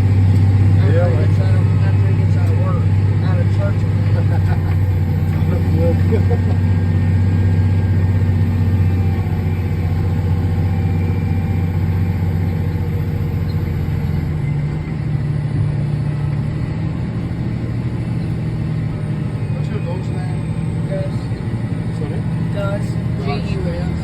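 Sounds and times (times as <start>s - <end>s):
harvester engine humming: 0.0s - 24.0s.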